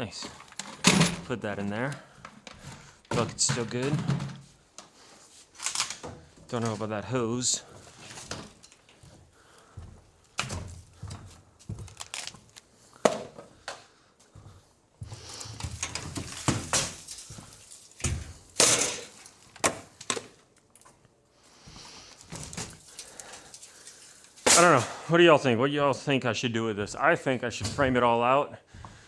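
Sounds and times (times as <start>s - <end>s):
objects knocking and scraping: 2.2s - 4.6s, 15.6s - 20.4s.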